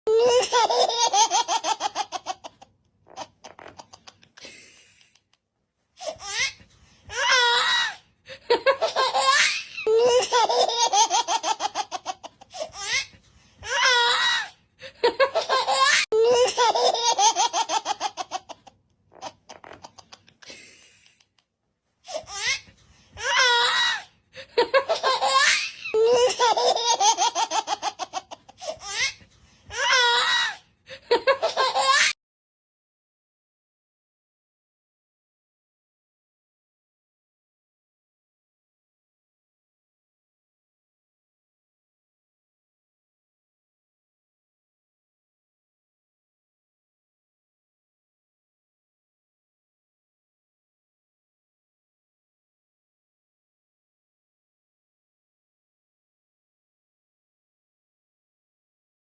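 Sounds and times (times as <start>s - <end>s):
young child giggling: 8.3s - 13.0s, 14.9s - 18.6s, 24.5s - 29.2s, 31.0s - 32.2s.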